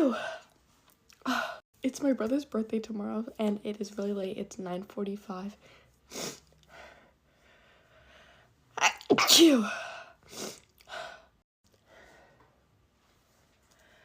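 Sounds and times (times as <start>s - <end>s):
person breathing: 6.6s - 8.5s
person sneezing: 8.8s - 10.6s.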